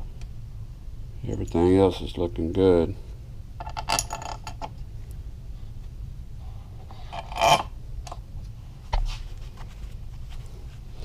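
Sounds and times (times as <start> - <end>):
metal parts scraping: 7.0 - 7.7.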